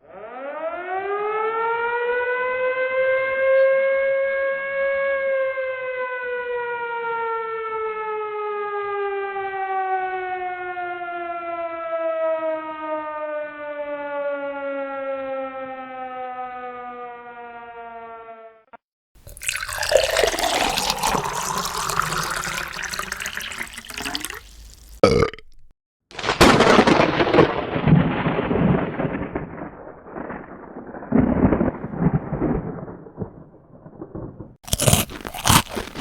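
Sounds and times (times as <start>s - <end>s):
siren wail falling in pitch: 0.0s - 18.6s.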